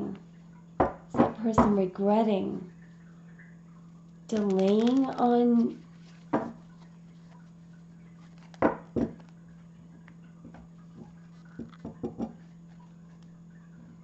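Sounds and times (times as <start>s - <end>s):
steady low hum: 0.0s - 14.0s
sharp taps and knocks: 10.4s - 12.4s.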